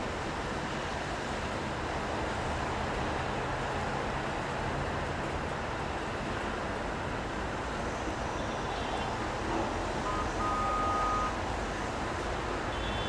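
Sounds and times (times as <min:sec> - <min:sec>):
rain: 0:00.0 - 0:13.0
traffic: 0:00.0 - 0:13.0
short steady tone: 0:10.0 - 0:11.3.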